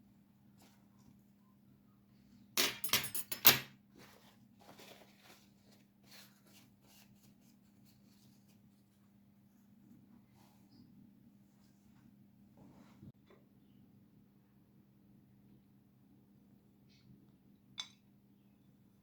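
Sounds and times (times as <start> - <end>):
kitchen things clattering: 2.6 - 3.8.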